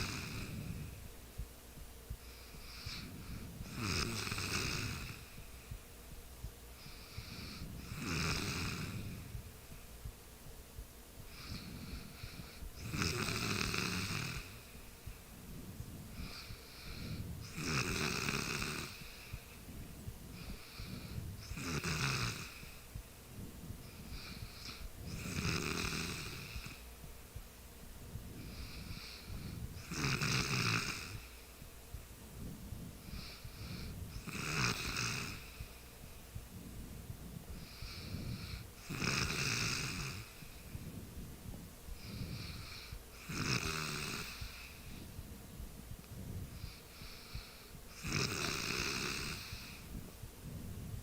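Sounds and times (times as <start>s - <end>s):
person snoring loudly: 0.0s - 0.9s, 2.8s - 5.3s, 7.2s - 9.3s, 11.3s - 14.6s, 16.2s - 19.1s, 20.4s - 22.7s, 24.1s - 26.8s, 28.4s - 31.3s, 33.0s - 35.6s, 37.6s - 40.4s, 42.0s - 44.8s, 46.6s - 49.9s
quiet breaths: 0.0s - 51.0s.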